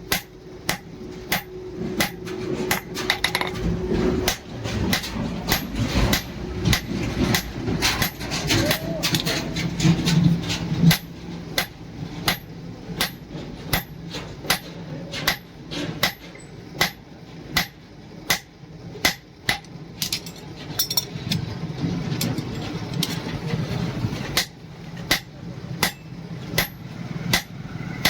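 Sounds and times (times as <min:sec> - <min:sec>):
hammer striking steel on anvil: 0:00.1 - 0:03.6, 0:10.9 - 0:16.2, 0:16.8 - 0:17.0, 0:17.6 - 0:21.0, 0:25.1 - 0:27.6.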